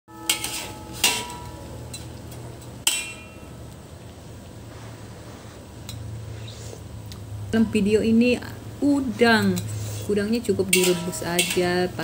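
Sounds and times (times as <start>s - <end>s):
metallic clanks of cookware: 0.1s - 3.6s, 10.6s - 12.0s.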